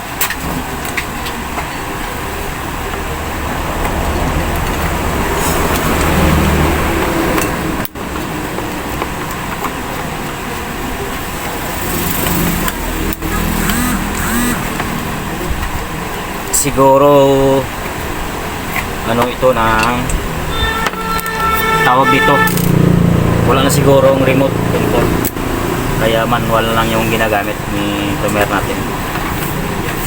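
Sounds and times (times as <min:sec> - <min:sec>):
vehicle engine low rumble: 0:00.0 - 0:21.6
road traffic noise: 0:00.0 - 0:30.0.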